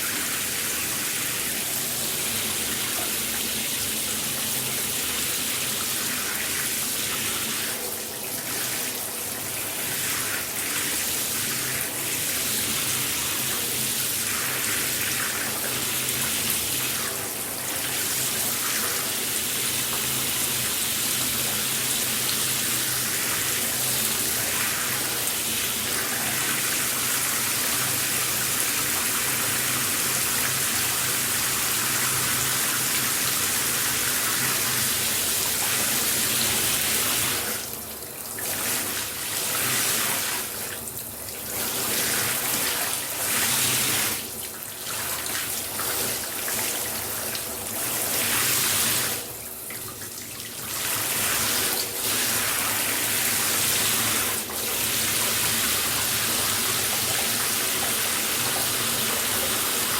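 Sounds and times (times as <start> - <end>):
shower water hissing: 50.6 - 59.9.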